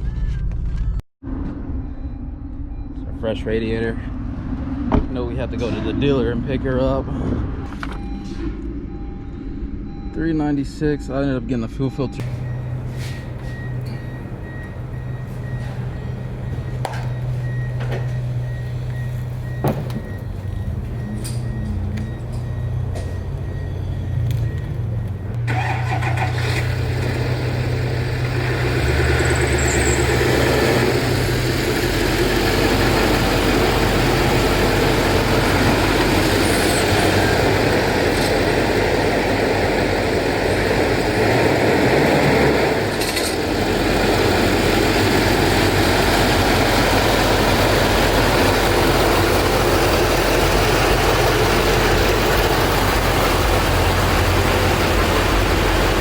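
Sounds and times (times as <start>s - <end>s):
road noise: 1.2s - 10.1s, 12.1s - 56.0s
vehicle engine hum: 12.2s - 56.0s.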